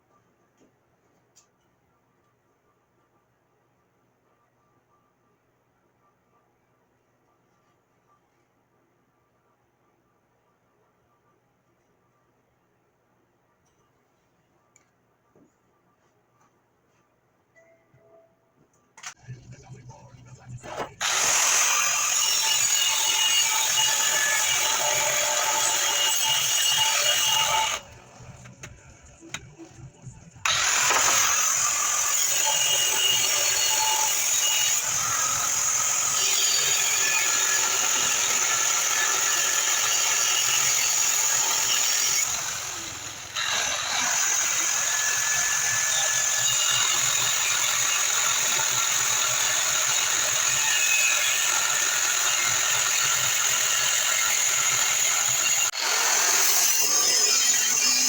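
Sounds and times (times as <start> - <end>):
angle grinder grinding steel: 20.7 - 27.9, 30.5 - 58.0.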